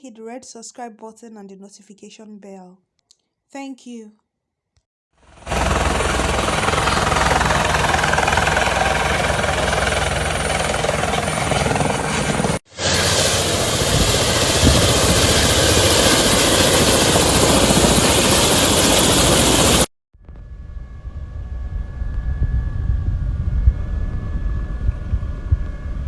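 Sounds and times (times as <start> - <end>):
helicopter rotor and engine: 5.2 - 26.0.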